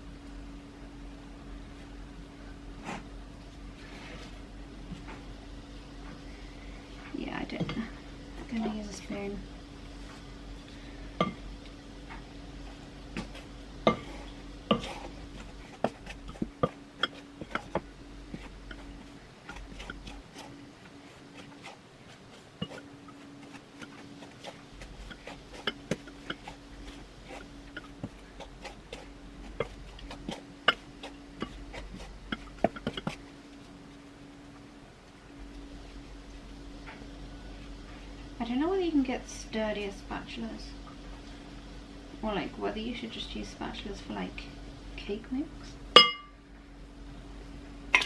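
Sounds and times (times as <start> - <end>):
low hum: 0.0 - 48.0
spoon scraping mixing bowl: 12.7 - 33.3.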